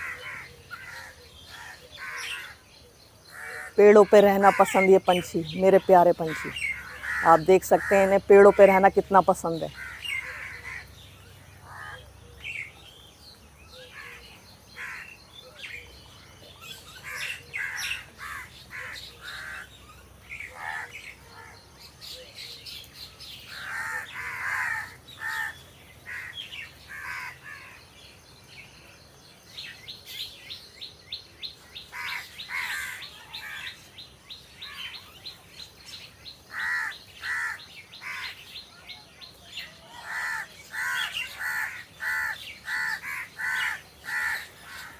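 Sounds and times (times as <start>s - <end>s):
crows cawing: 0.0s - 2.6s, 3.3s - 5.3s, 6.0s - 11.0s, 11.6s - 12.1s, 13.9s - 15.2s, 17.0s - 19.8s, 20.4s - 21.6s, 23.5s - 27.8s, 31.6s - 33.8s, 36.5s - 38.5s, 39.8s - 44.9s.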